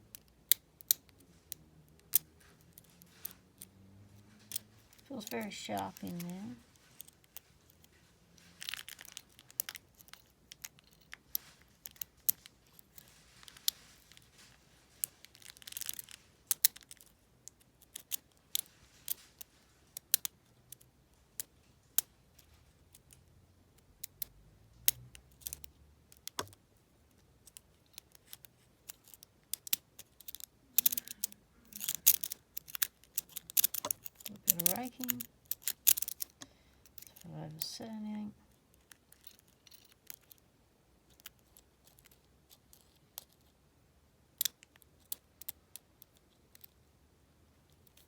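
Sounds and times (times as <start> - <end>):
lock pick clicking: 27.5 - 37.2
pick scraping in lock: 27.5 - 37.2.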